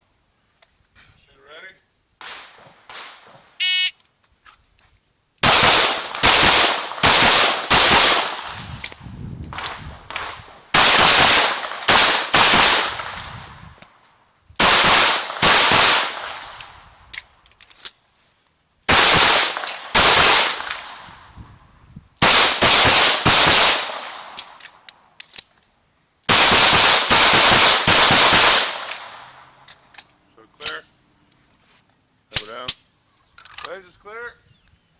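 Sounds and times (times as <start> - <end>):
pistol firing: 2.2 - 3.5, 5.4 - 8.6, 9.5 - 13.2, 14.6 - 16.6, 18.9 - 21.1, 22.2 - 24.6, 26.3 - 29.5
shot timer beep: 3.6 - 4.0.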